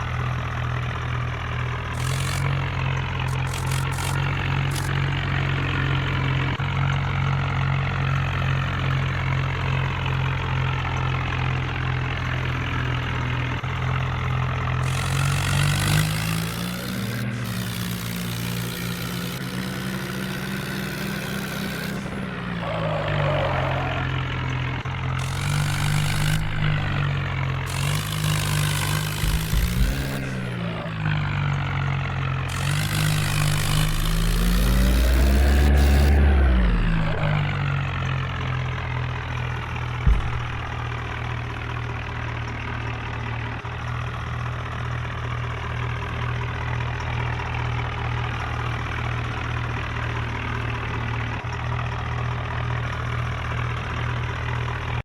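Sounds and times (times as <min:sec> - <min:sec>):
diesel tractor engines revving: 0:00.0 - 0:55.0
sharp knock: 0:29.1 - 0:30.5, 0:40.1 - 0:40.9.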